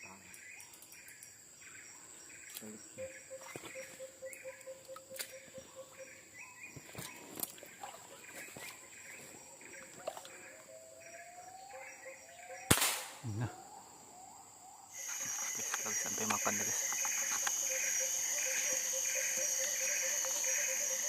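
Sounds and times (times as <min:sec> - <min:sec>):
birds calling: 0:00.0 - 0:21.0
high-pitched insect drone: 0:13.3 - 0:21.0.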